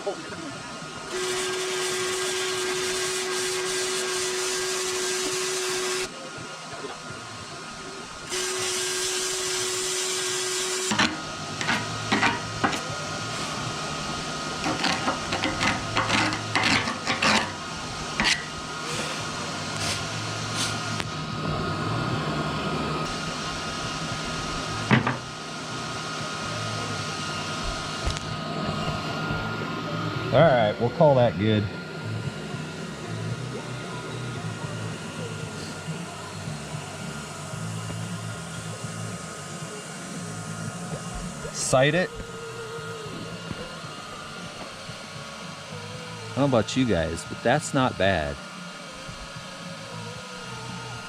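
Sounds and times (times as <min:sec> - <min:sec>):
engine running: 0:00.0 - 0:51.0
welding arc hissing and buzzing: 0:00.0 - 0:51.0.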